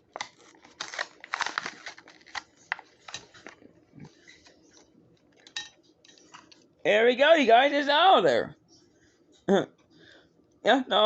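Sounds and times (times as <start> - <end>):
plastic blister pack crackling: 0.0 - 3.6.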